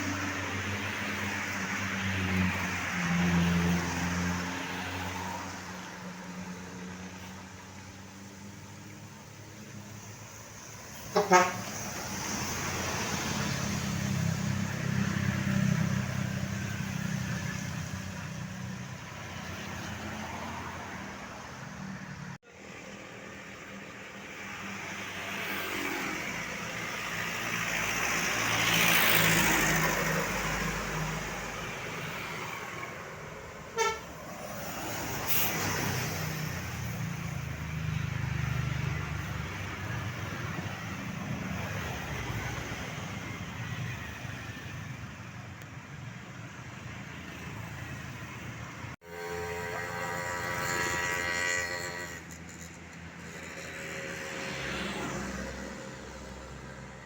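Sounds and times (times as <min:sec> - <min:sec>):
vehicle passing on wet road: 0:00.0 - 0:06.0, 0:11.7 - 0:17.8, 0:24.4 - 0:43.2
traffic engine rumble: 0:00.0 - 0:54.3
horn toot: 0:11.0 - 0:11.9, 0:33.7 - 0:34.3.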